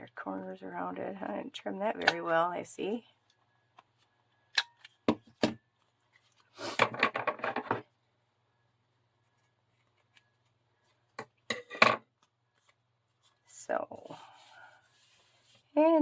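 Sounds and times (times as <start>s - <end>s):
scratchy paper strokes: 14.0s - 16.0s.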